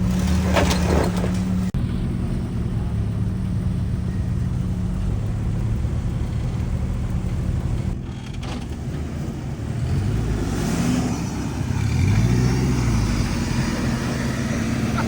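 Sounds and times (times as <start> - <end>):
off-road vehicle engine revving: 0.0 - 15.0.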